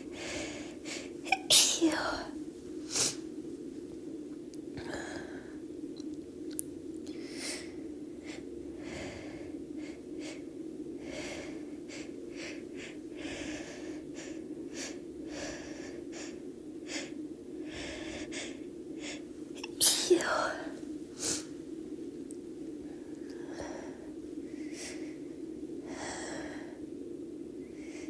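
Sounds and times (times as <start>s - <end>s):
steady low hum: 0.0s - 28.0s
woman sniffing and breathing: 2.2s - 3.3s, 11.1s - 21.6s.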